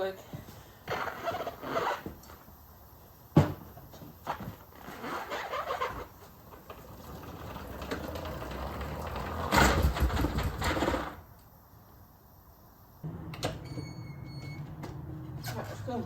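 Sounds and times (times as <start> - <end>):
quad engine rumble: 6.5 - 11.2.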